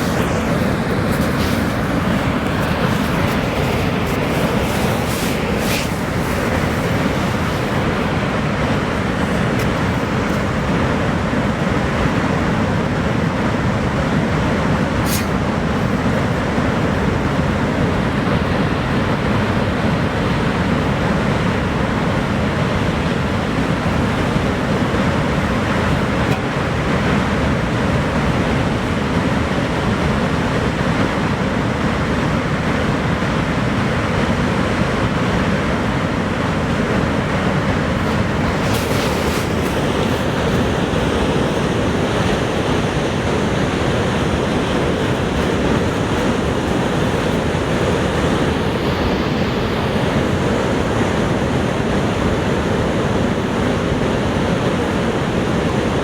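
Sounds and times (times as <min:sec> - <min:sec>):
waterfall roaring: 0:00.0 - 0:18.3, 0:36.0 - 0:56.0.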